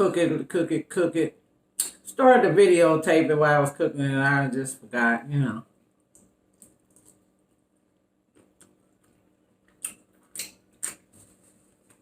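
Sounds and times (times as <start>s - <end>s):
mouth smacks while chewing: 8.3s - 11.2s.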